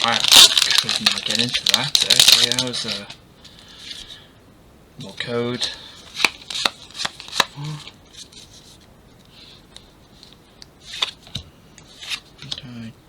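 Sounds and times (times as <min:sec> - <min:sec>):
wrapper rustling: 0:00.0 - 0:03.1
cards clicking and snapping: 0:06.2 - 0:07.8.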